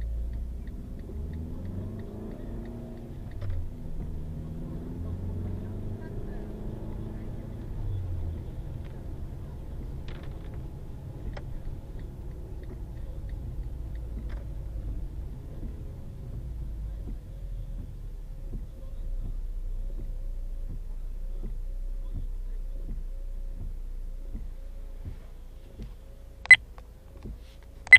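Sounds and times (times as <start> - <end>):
car engine rumble: 0.0 - 27.9
road noise inside cabin: 0.0 - 27.9.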